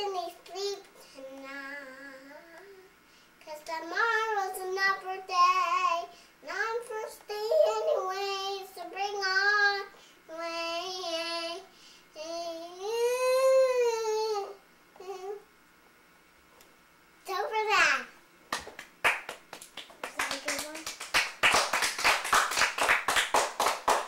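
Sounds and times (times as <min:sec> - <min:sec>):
girl singing unaccompanied: 0:00.0 - 0:15.4.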